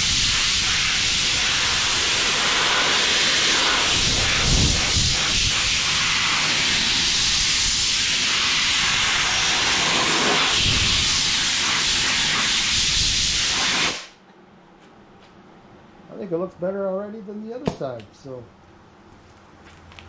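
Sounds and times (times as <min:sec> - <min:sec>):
air blow gun hissing: 0:00.0 - 0:14.2
low buffeting gusts: 0:03.9 - 0:06.9.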